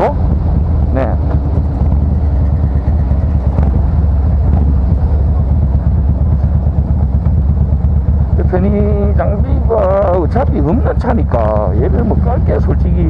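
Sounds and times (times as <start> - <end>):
motorcycle engine deep exhaust note: 0.0 - 13.0.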